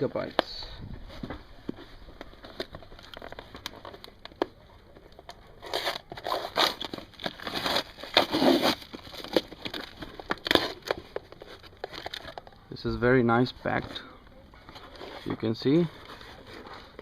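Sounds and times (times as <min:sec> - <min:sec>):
packaging crinkling: 0:01.7 - 0:12.7.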